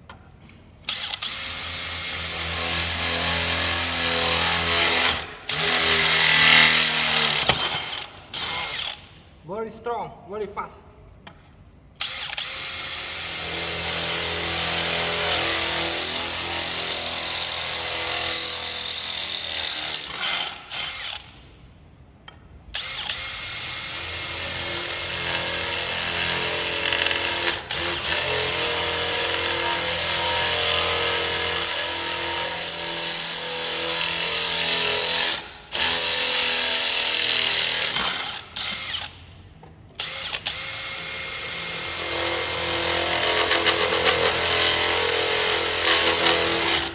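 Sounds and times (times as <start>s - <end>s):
drill boring into metal: 22.8s - 39.1s, 40.0s - 46.9s.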